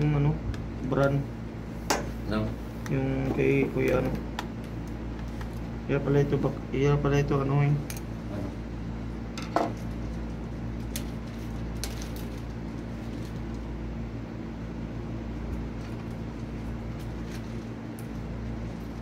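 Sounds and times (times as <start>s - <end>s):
low background hum: 0.0s - 19.0s.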